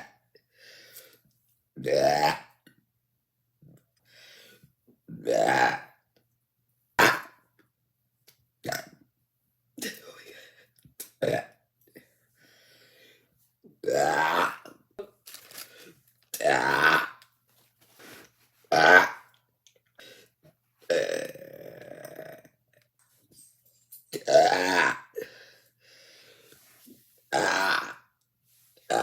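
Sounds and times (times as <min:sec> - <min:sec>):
woman burping: 0:01.8 - 0:02.6, 0:05.1 - 0:06.0, 0:11.2 - 0:11.6, 0:13.8 - 0:15.2, 0:16.4 - 0:17.2, 0:18.7 - 0:19.3, 0:20.9 - 0:22.6, 0:24.2 - 0:25.3, 0:27.3 - 0:28.0.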